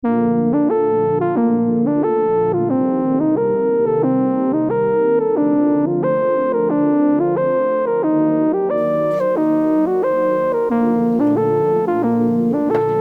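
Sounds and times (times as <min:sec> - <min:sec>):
keyboard playing sustained chords: 0:08.8 - 0:13.0.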